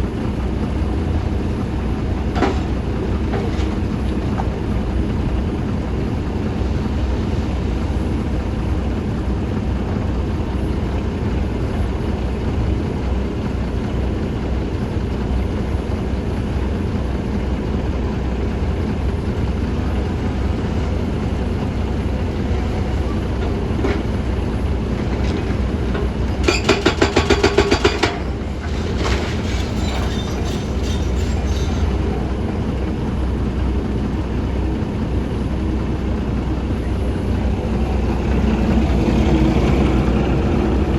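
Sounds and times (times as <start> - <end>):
excavator engine rumbling: 0.0 - 40.9
loose clatter: 22.5 - 32.2.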